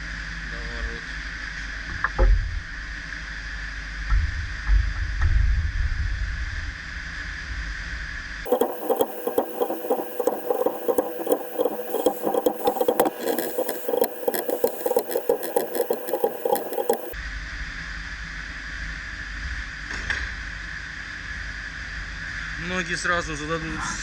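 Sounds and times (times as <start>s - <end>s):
low steady hum: 8.5s - 17.2s.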